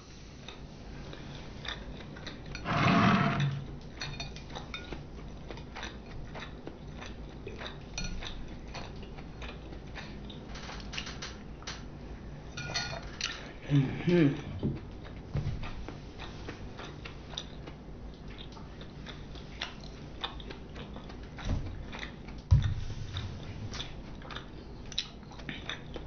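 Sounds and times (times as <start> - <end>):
person chewing: 0.4 - 2.7, 3.3 - 10.4, 14.4 - 26.0
loud rough sound: 2.6 - 3.6.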